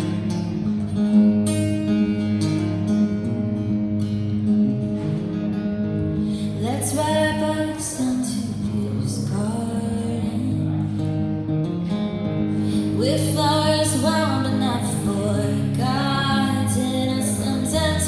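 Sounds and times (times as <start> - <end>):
acoustic guitar strumming: 0.0 - 18.0
woman singing: 6.4 - 10.9, 12.7 - 18.0.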